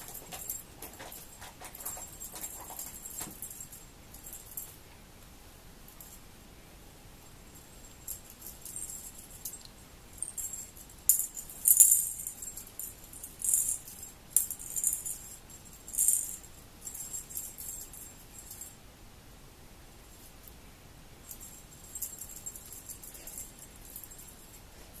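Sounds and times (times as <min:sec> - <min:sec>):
small object rattling and jingling: 0:00.0 - 0:04.7, 0:07.8 - 0:18.8, 0:21.3 - 0:24.7.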